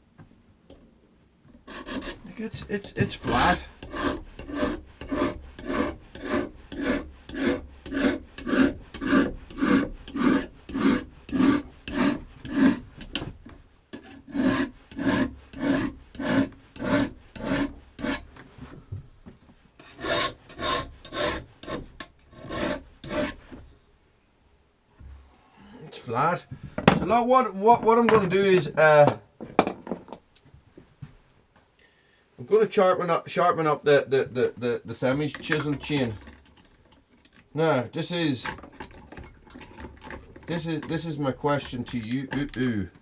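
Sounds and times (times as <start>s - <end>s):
file stroking along metal bar: 1.6s - 13.3s, 14.0s - 18.3s, 19.8s - 23.6s.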